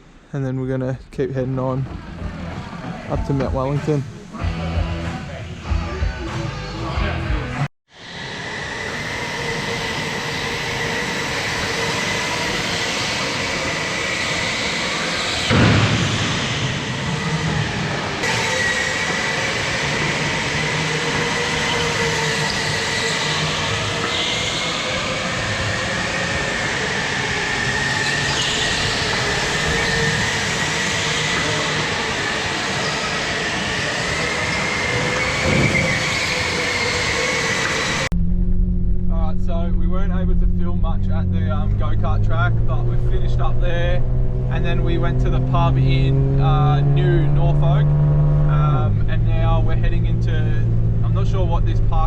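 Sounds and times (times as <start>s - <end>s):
vehicle engine rumble: 0.0s - 7.7s, 37.8s - 52.0s
kart passing close: 8.0s - 51.9s
go-karts engines whining: 8.0s - 52.0s.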